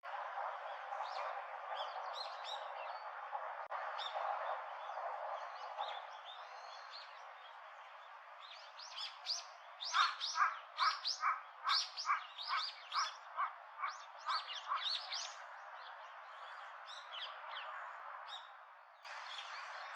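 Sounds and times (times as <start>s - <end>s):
birds chirping: 4.0s - 19.9s.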